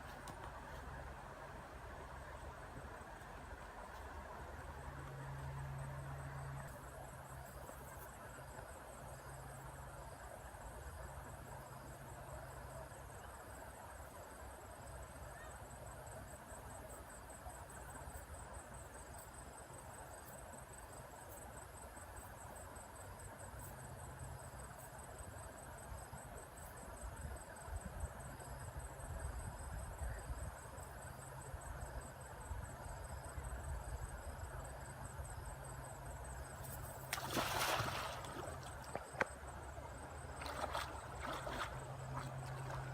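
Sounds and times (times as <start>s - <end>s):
insects trilling: 22.0s - 42.9s.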